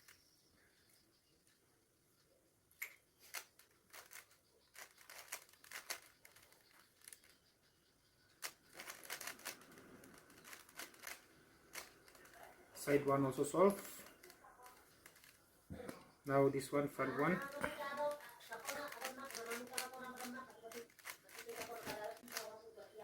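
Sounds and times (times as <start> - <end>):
rubik's cube clicking: 2.8 - 7.5, 8.3 - 15.4, 17.2 - 22.6.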